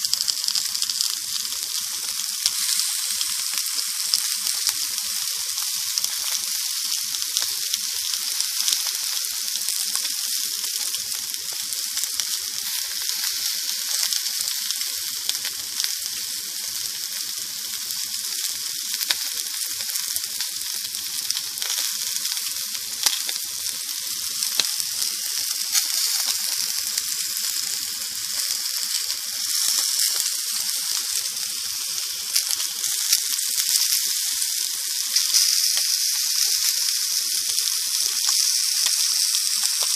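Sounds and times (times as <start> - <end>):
sausages sizzling in a pan: 0.0 - 39.9
sharp pops and crackles: 19.0 - 39.9.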